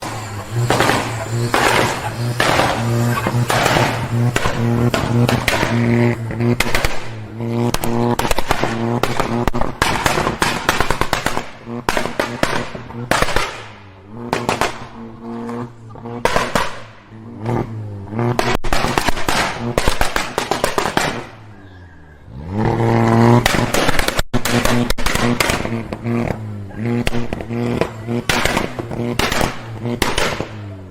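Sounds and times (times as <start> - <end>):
exhaust pops and crackles: 0.0 - 21.7, 22.5 - 30.9
car engine revving: 0.0 - 30.9.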